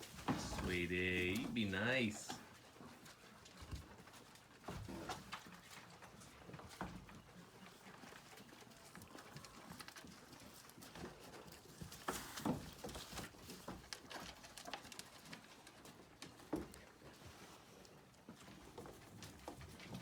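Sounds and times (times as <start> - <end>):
animals knocking and scuffing in pen: 0.0 - 20.0.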